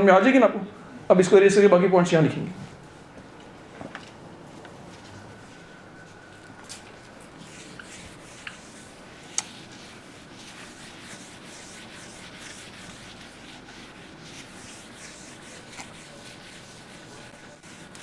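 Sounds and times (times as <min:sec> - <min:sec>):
duster rubbing a board: 0:07.4 - 0:18.0.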